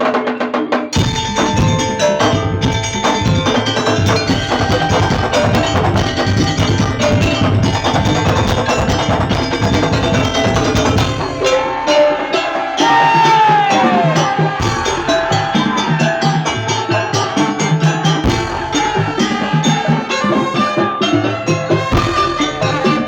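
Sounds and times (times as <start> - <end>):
percussion ensemble fast rhythm: 0.0 - 23.0
low drums: 1.0 - 12.3, 12.9 - 19.6.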